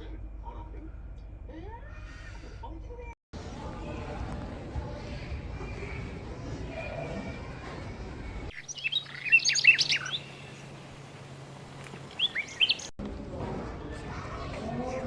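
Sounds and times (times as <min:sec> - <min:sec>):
small bird chirping: 0:08.5 - 0:11.2, 0:11.8 - 0:12.9.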